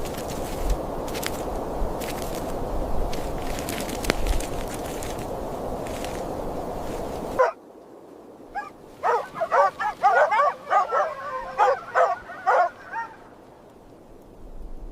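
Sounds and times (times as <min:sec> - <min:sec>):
dog yipping and whimpering: 0:08.6 - 0:13.2.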